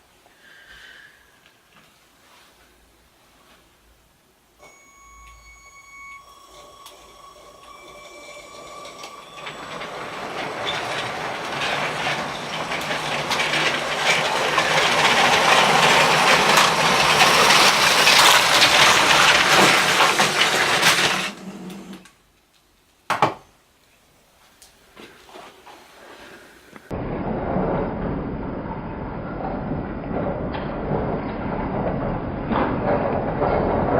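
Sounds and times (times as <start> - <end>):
steady ringing tone: 4.6 - 11.5
train clattering on track: 8.5 - 21.3, 29.5 - 33.9.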